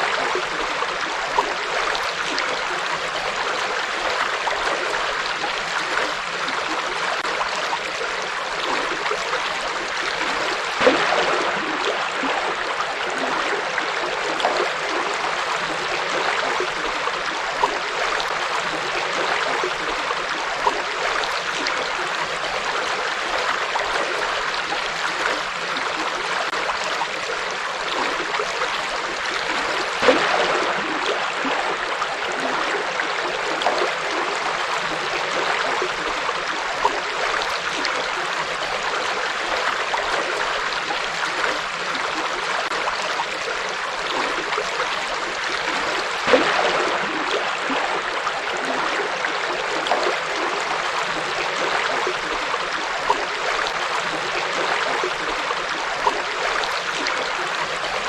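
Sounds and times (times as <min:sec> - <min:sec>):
water splash: 0:08.6 - 0:24.1, 0:27.8 - 0:40.6, 0:44.0 - 0:58.0.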